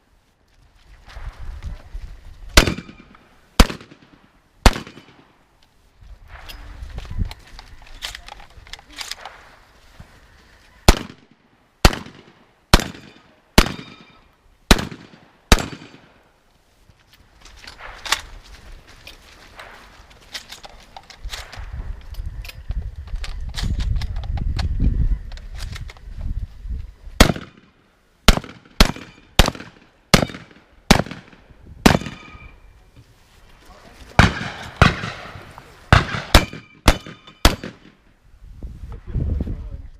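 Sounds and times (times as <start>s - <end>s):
shotgun shots echoing: 2.6s - 5.3s, 10.9s - 16.2s, 27.2s - 27.7s, 28.3s - 32.6s, 34.2s - 38.0s.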